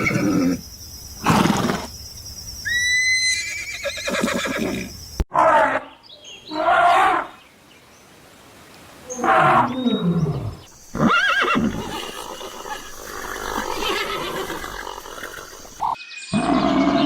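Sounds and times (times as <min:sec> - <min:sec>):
animal calling: 0:09.1 - 0:17.0.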